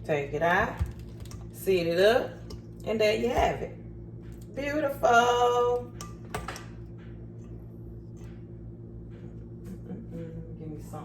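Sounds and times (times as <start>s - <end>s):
steady low hum: 0.0s - 11.0s
kitchen items clicking and tapping: 0.4s - 3.7s, 5.8s - 6.8s.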